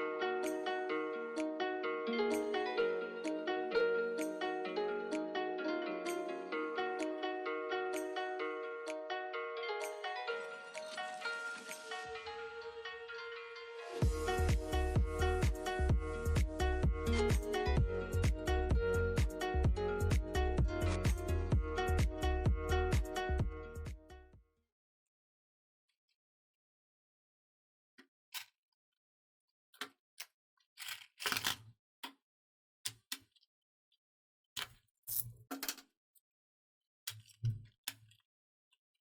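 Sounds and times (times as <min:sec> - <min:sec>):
electronic dance music: 0:09.9 - 0:24.0.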